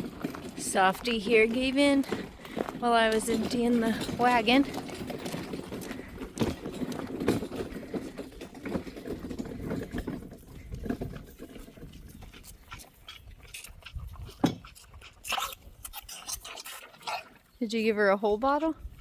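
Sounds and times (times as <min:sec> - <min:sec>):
animal panting: 0:09.6 - 0:17.4.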